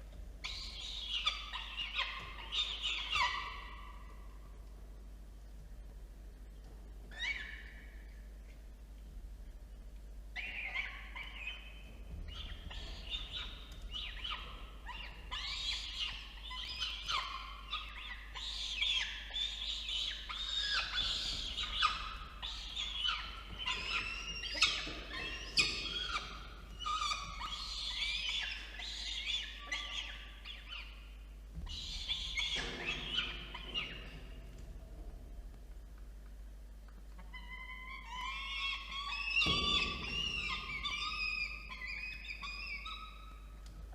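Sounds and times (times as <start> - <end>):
steady low hum: 0.0 - 43.9
falcon chicks squealing: 0.4 - 4.1, 10.4 - 11.7, 12.3 - 31.0, 31.7 - 34.3, 37.2 - 43.6.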